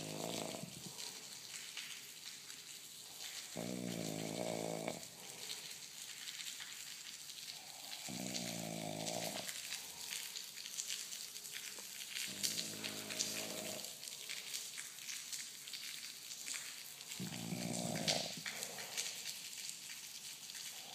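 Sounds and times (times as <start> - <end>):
man snoring: 0.0 - 0.8, 3.6 - 5.1, 8.1 - 9.5, 12.3 - 13.9, 17.2 - 18.4
crackling hiss: 0.0 - 20.9.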